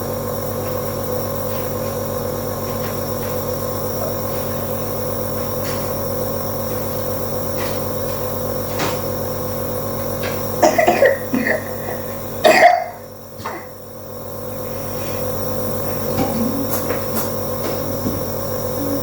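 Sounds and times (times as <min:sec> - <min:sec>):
nebulizer humming: 0:00.0 - 0:19.0
child coughing: 0:10.6 - 0:13.8.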